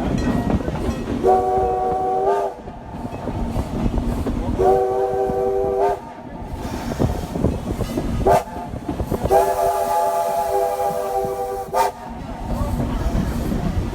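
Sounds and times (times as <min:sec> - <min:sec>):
rumble of moving train: 0:00.0 - 0:13.9
steam locomotive whistle blasts: 0:01.2 - 0:02.6, 0:04.6 - 0:06.1, 0:09.3 - 0:12.1.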